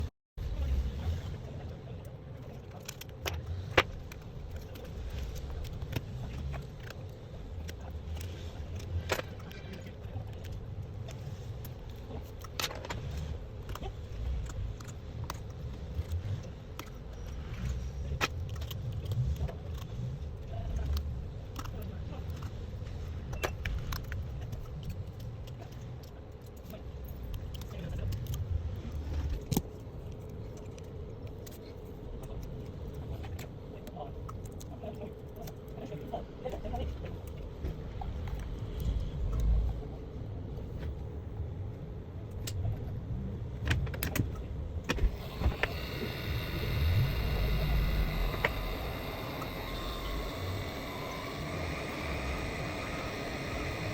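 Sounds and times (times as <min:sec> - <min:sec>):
steady low rumble: 0:00.0 - 0:26.1, 0:26.9 - 0:53.9
metallic clicks of small tools: 0:23.3 - 0:28.4
faint hum: 0:44.3 - 0:53.9.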